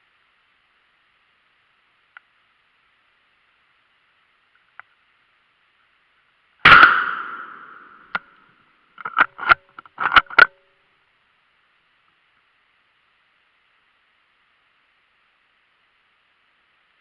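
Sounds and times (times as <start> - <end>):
loud shot: 6.6 - 8.2
sharp clicks and knocks: 9.0 - 10.6.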